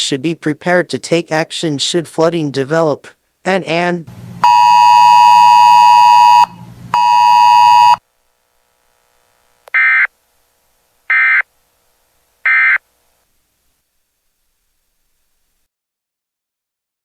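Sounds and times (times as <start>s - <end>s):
buzzing alert tones: 11.1s - 11.4s.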